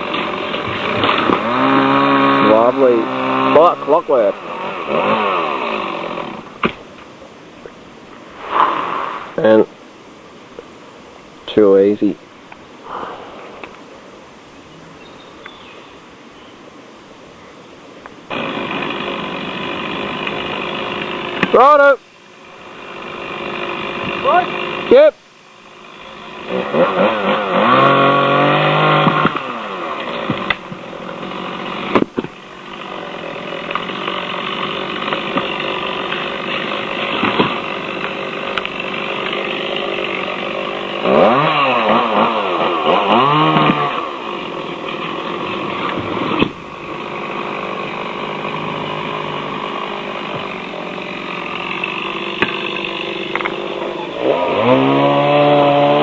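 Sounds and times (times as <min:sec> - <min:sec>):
chainsaw cutting branch: 0:00.0 - 0:06.9, 0:18.3 - 0:21.9, 0:22.5 - 0:56.0.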